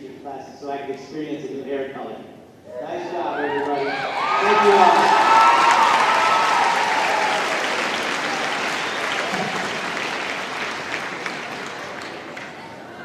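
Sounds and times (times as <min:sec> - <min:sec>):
crowd clapping and cheering: 0:03.6 - 0:13.0.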